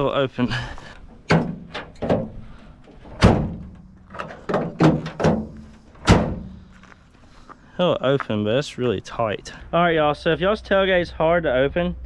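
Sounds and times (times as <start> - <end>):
tailgate latch clunking: 0.9 - 6.6
loud thuds: 1.0 - 6.8.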